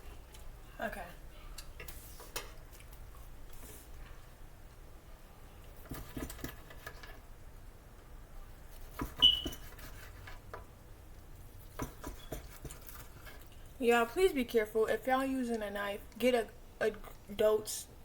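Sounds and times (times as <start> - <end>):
short high squeak: 9.2 - 9.6.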